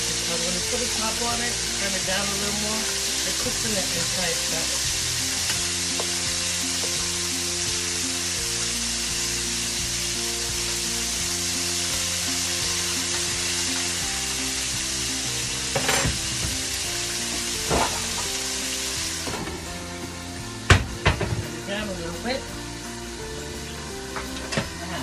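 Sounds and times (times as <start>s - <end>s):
chicken sizzling in hot oil: 0.0s - 25.0s
lid going on pan: 15.7s - 18.4s
knocks: 20.7s - 21.5s.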